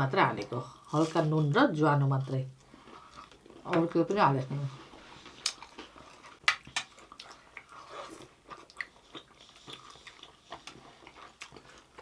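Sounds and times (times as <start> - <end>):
person chewing crunchy food: 2.6 - 3.7, 4.8 - 12.0.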